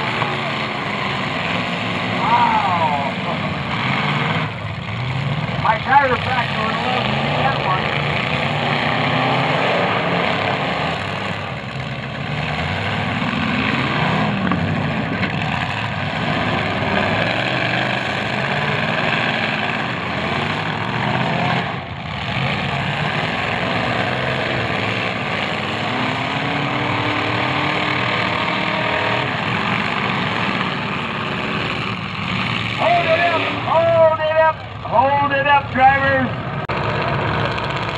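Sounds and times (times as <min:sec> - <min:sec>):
car engines revving: 0:00.0 - 0:37.9.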